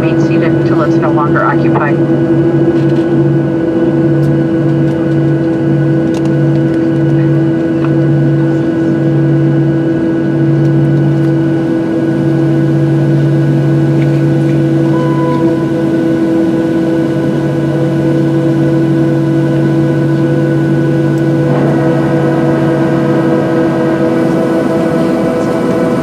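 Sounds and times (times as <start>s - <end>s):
airplane cabin hum: 0.0s - 26.0s
pulsing low drone: 0.0s - 26.0s
steady tones: 11.4s - 26.0s.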